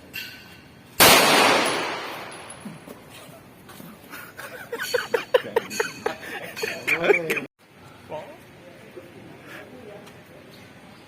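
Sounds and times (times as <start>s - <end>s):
pistol shot with echo: 1.0s - 2.5s.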